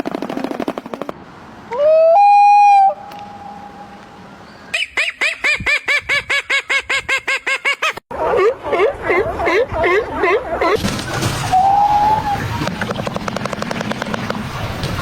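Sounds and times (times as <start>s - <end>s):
rising bird call: 1.7s - 6.0s, 11.5s - 13.0s.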